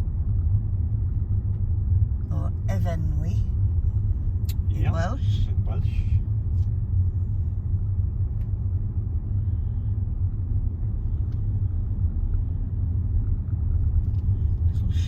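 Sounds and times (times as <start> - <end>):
car engine and road noise: 0.0 - 15.0.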